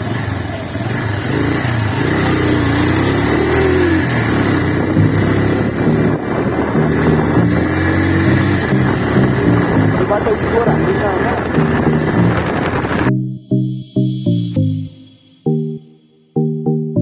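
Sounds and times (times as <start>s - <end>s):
motorcycle engine running: 0.0s - 13.1s.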